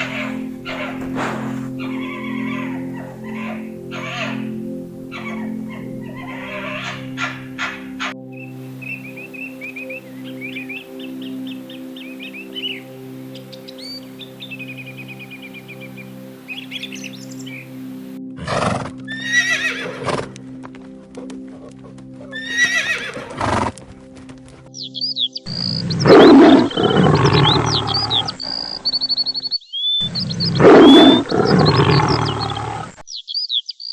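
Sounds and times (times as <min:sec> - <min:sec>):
birds chirping: 0:00.0 - 0:18.2, 0:19.0 - 0:33.9
background music: 0:00.0 - 0:29.5, 0:30.5 - 0:32.8
horse neighing: 0:18.4 - 0:20.3, 0:22.3 - 0:23.7, 0:26.0 - 0:28.8, 0:30.1 - 0:32.9.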